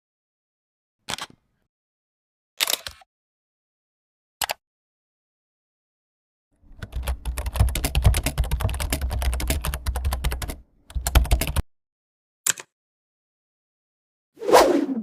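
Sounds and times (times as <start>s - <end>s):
keyboard typing: 6.7s - 11.6s.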